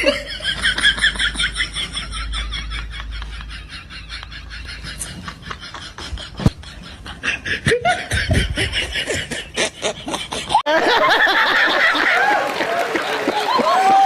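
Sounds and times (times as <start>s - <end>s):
people laughing and snickering: 0.0s - 14.0s.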